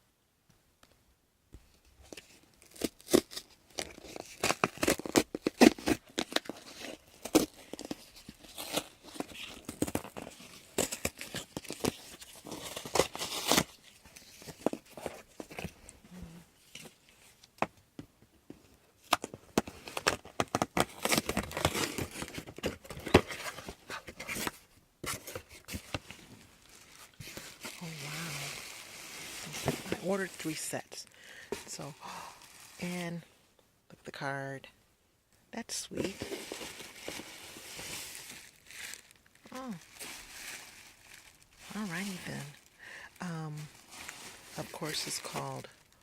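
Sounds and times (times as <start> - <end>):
package wrapping tearing and crinkling: 2.1 - 15.7, 19.1 - 30.2, 36.0 - 42.7.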